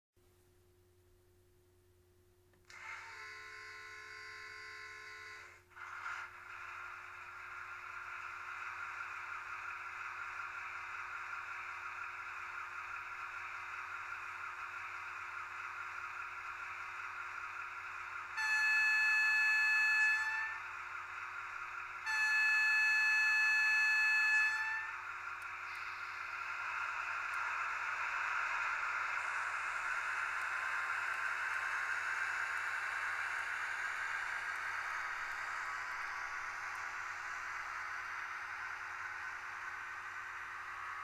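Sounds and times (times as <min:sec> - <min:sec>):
diesel engine starting and running: 0:02.6 - 0:41.0
locomotive horn blast: 0:18.4 - 0:20.7, 0:22.0 - 0:25.0.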